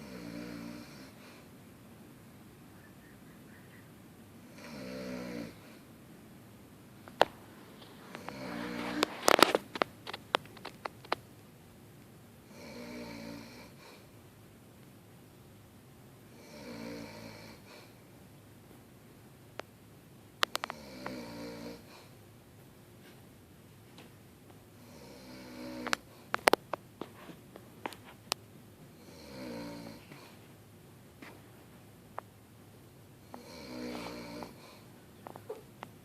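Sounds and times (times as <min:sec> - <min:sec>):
woman snoring loudly: 0:00.0 - 0:01.2, 0:04.4 - 0:05.7, 0:08.1 - 0:09.1, 0:12.5 - 0:14.0, 0:16.3 - 0:17.7, 0:20.6 - 0:21.9, 0:24.8 - 0:26.0, 0:29.0 - 0:30.2, 0:33.2 - 0:34.8.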